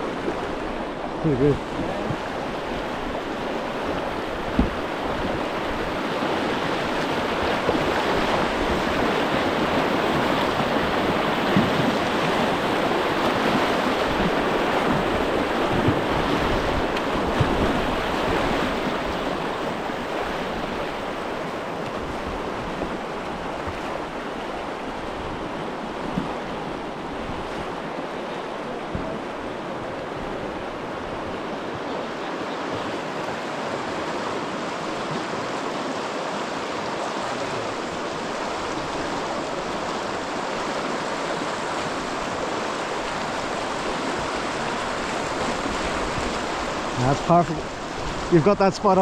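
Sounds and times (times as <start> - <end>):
river rushing over rapids: 0.0 - 49.0
faint knocks: 4.5 - 4.8.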